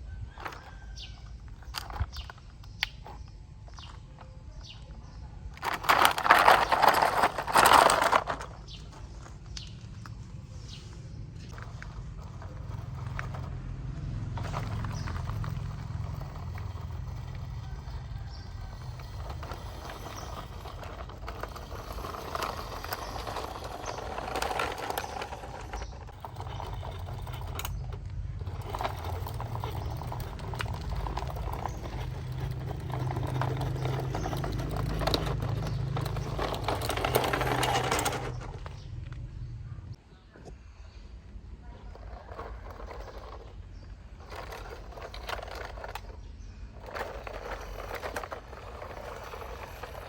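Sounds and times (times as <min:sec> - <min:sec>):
heavy diesel machinery running: 0:10.8 - 0:39.3.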